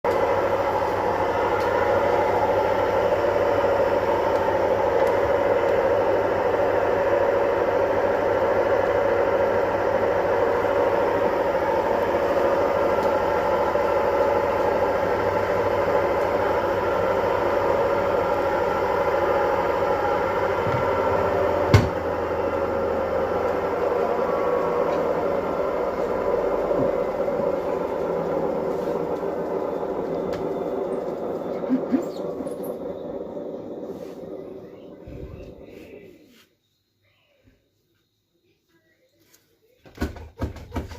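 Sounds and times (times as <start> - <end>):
washing machine spinning hum: 0.0 - 36.4, 39.9 - 40.9.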